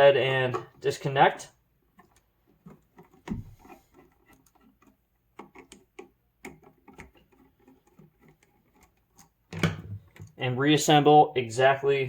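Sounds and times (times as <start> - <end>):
small clicks and taps: 1.9 - 9.4.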